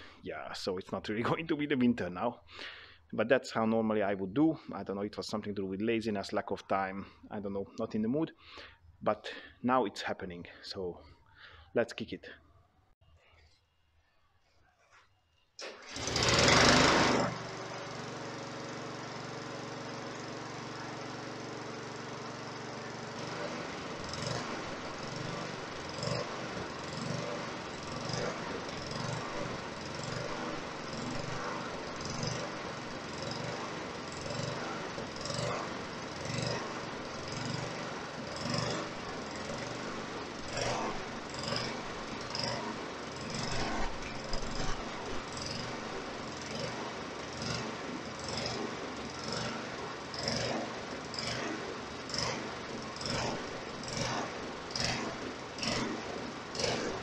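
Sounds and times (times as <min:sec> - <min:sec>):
lawn mower engine starting and running: 0:00.0 - 0:00.2, 0:15.6 - 0:57.0.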